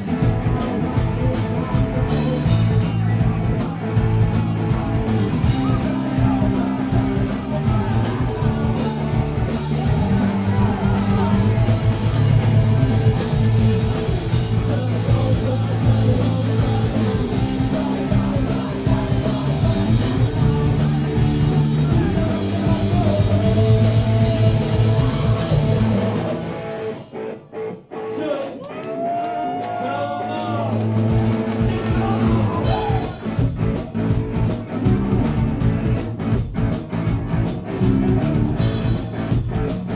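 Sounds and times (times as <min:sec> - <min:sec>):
person singing: 0:00.0 - 0:26.7, 0:31.6 - 0:33.4
sliding guitar line: 0:00.0 - 0:28.2, 0:30.5 - 0:39.9
live rock band: 0:00.0 - 0:39.9.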